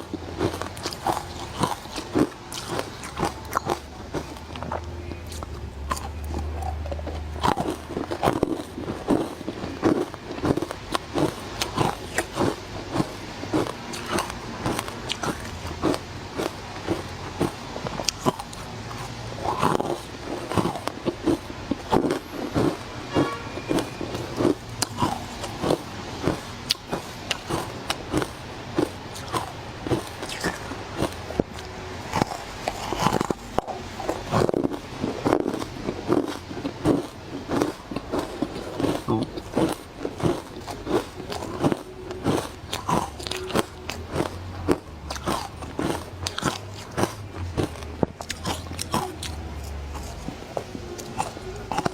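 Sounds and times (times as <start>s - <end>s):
crunching frozen ice: 0.0s - 51.9s.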